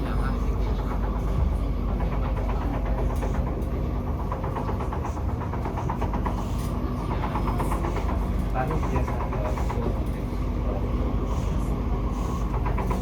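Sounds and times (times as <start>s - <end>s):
train running noise: 0.0s - 13.0s.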